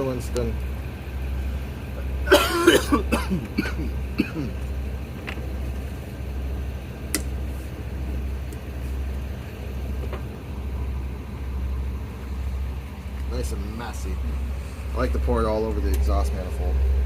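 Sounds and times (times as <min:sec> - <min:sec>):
vehicle engine idling: 0:00.0 - 0:17.0
harsh cough-like sound: 0:02.3 - 0:04.6.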